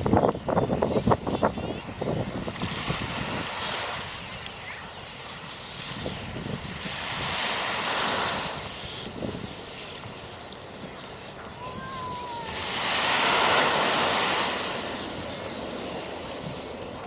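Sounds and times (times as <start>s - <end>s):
wind rumbling on microphone: 0.0s - 17.0s
ocean waves washing in: 2.1s - 17.0s.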